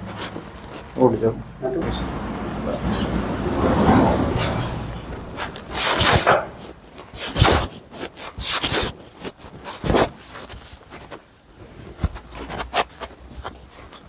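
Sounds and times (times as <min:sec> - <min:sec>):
clothing rustling: 0:00.0 - 0:01.2.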